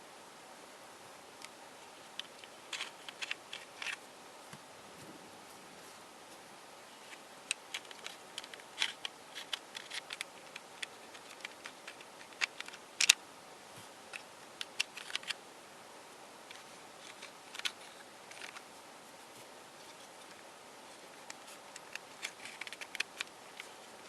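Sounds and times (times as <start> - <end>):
plastic puzzle pieces clicking: 2.2 - 4.0, 7.1 - 13.2, 14.1 - 15.4, 16.5 - 18.6, 21.0 - 23.8.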